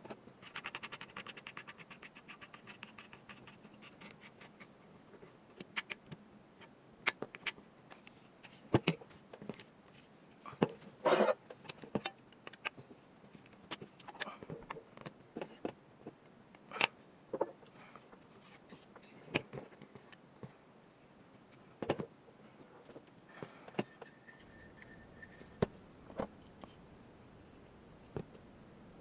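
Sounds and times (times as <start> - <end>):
faint high tone: 23.8 - 25.6.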